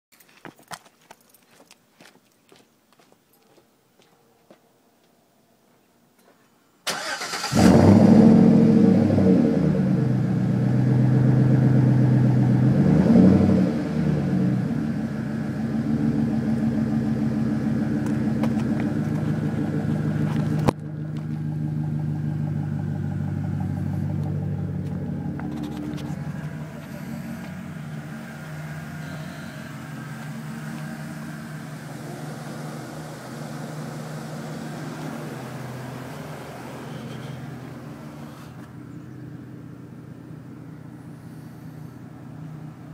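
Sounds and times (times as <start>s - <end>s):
engine revving: 6.9s - 38.7s
car engine exhaust rumble: 7.0s - 42.9s.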